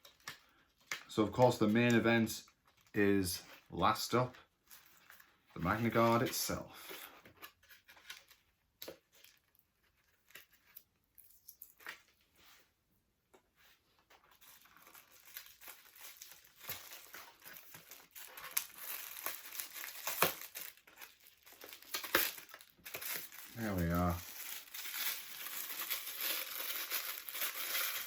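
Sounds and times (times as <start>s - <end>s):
paper packaging crinkling and tearing: 14.2s - 28.0s.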